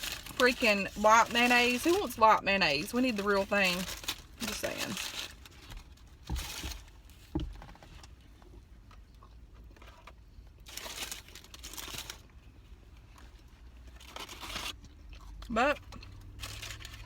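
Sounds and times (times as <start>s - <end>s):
paper packaging crinkling: 0.0s - 7.2s, 9.8s - 12.4s, 13.2s - 17.0s.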